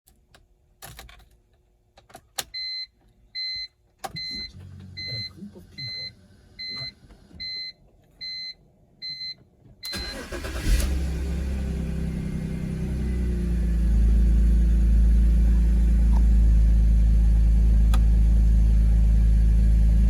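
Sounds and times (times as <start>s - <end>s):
car warning chime beeping: 2.6s - 10.8s
engine low rumble: 4.2s - 7.4s, 9.9s - 20.0s.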